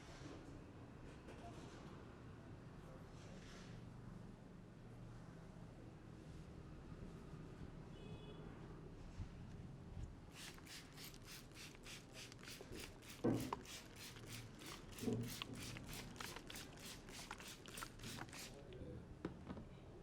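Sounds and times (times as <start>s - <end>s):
hands rubbing through hair: 10.4s - 18.5s.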